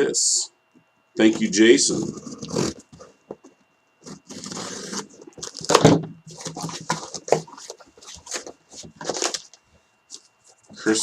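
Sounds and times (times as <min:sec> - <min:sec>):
paper packaging tearing and rustling: 0:02.1 - 0:02.8, 0:04.0 - 0:09.6.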